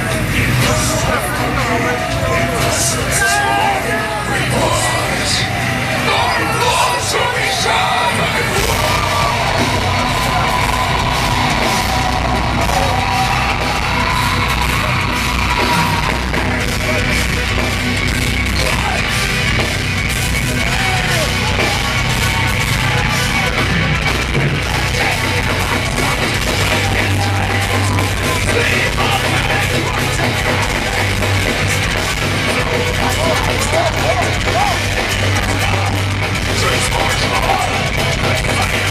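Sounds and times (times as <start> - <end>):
crowd yelling: 0.0 - 38.9
live folk metal band: 0.0 - 38.9.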